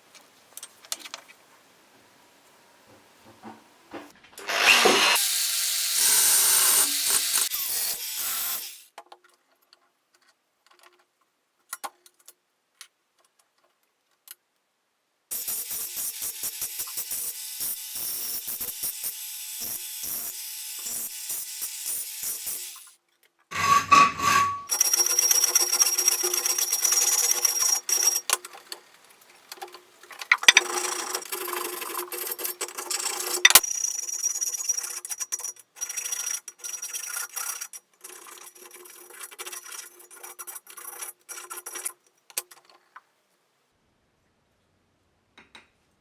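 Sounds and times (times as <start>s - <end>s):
tool abrading metal: 23.5s - 28.4s.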